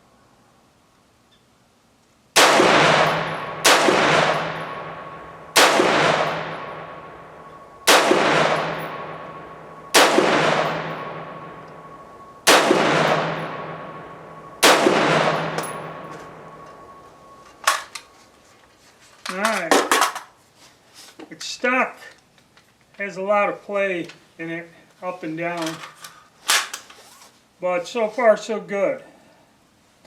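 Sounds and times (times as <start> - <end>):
rifle shots with echo: 2.4 - 17.9.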